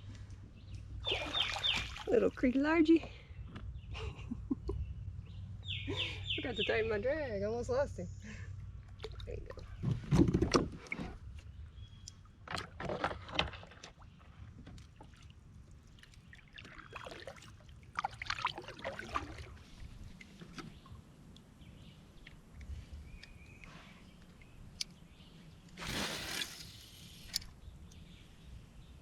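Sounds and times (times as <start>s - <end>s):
water splashing and sloshing: 0.9s - 2.8s, 8.8s - 11.5s, 12.1s - 24.8s.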